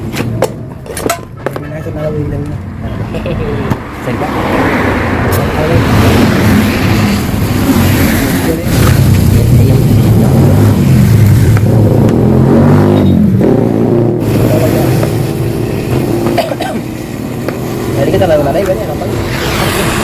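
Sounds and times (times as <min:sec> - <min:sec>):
two-stroke motorcycle engine revving: 0:05.7 - 0:20.0.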